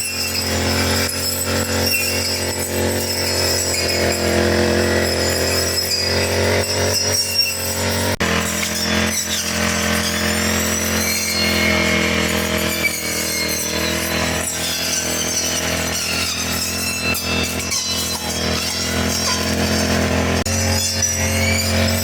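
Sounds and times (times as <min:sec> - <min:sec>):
brush cutter engine cutting grass: 0:00.0 - 0:22.0.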